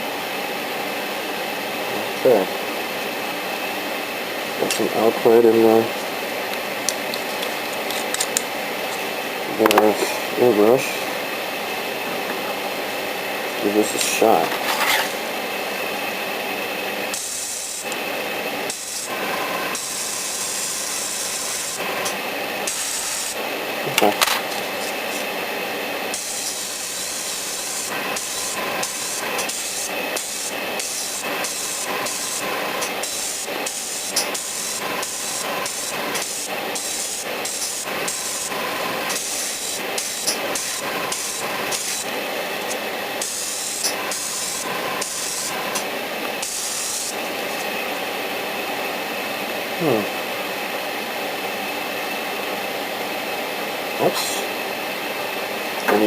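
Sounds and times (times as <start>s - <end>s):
airbrush hissing: 16.2s - 23.5s, 24.4s - 47.7s.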